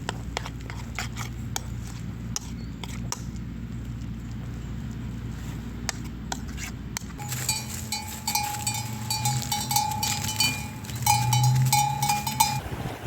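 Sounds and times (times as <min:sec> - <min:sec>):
rapid metal clinks: 0:07.2 - 0:12.6
steady bell-like tone: 0:07.2 - 0:12.8.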